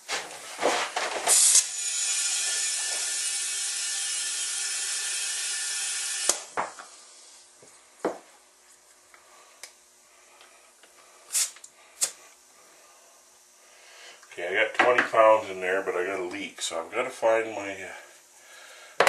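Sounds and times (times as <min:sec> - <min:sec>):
compressed air hissing: 0:01.2 - 0:01.9, 0:11.2 - 0:12.3.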